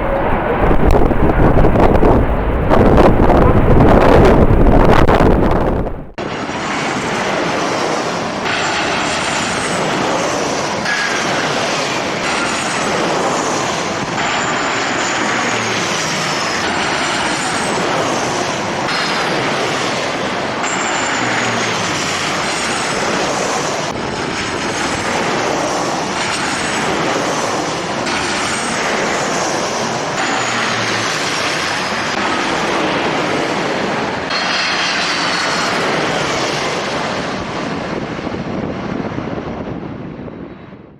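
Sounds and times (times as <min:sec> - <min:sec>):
high whines sliding down: 0:00.0 - 0:07.1
jet engines running: 0:00.0 - 0:40.9.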